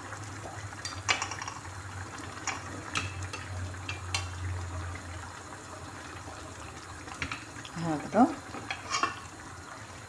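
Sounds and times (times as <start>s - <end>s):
sauce bubbling and sizzling: 0.0s - 10.0s
utensil clinking against pan: 8.7s - 9.2s.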